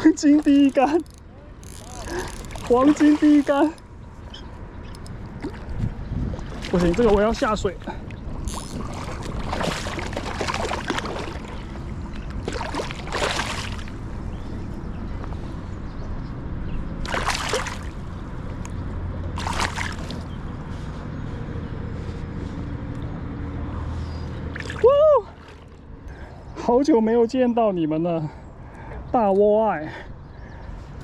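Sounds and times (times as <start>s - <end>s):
water sloshing and splashing: 0.0s - 14.2s, 17.0s - 18.6s, 19.3s - 20.9s, 24.4s - 26.0s
steady low rumble: 3.8s - 26.6s.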